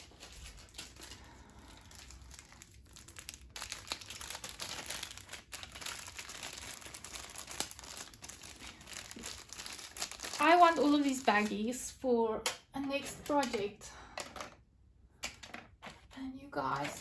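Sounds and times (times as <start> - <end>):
plastic baggies crinkling: 0.0 - 11.8.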